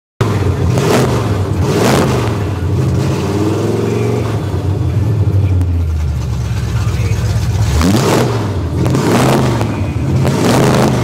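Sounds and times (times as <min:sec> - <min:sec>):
car engine rumbling: 0:00.2 - 0:11.0
engine rev blip: 0:06.5 - 0:11.0.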